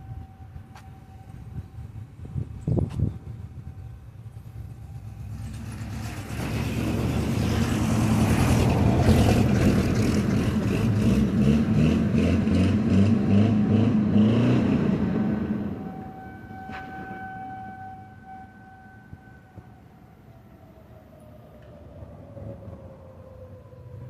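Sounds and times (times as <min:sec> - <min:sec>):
motor vehicle passing by: 0:04.9 - 0:15.8.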